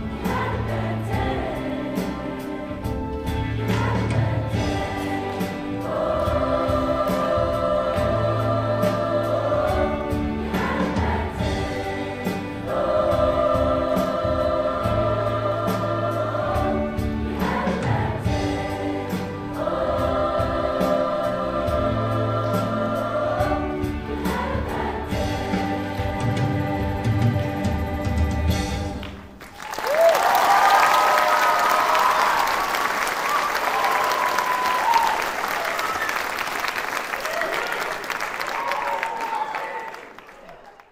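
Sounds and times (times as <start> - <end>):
choir singing held chords: 0.0 - 29.0
musical accompaniment: 0.0 - 39.5.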